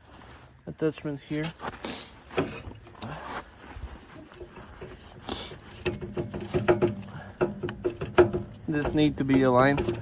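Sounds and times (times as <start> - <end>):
metal clicks and knocks: 4.2 - 10.0.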